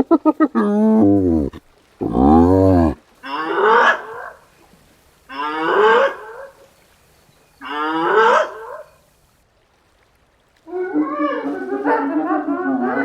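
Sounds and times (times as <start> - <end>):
hyena calling: 0.0 - 4.4, 10.7 - 13.0.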